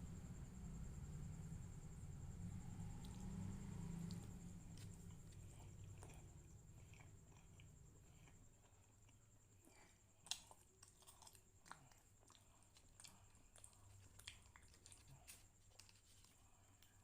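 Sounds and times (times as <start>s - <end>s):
chewing wet mouth clicks: 10.2s - 17.0s.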